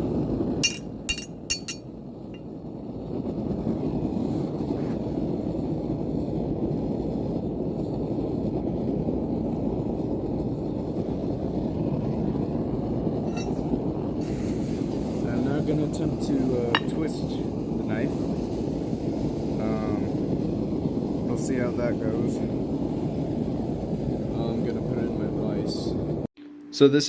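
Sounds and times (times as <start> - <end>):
metallic clinks of steel: 0.6 - 1.8, 13.3 - 13.6.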